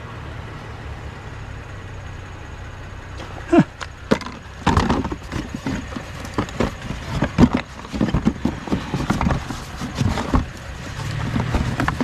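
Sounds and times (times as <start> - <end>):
junk knocking and clattering: 3.8 - 12.0.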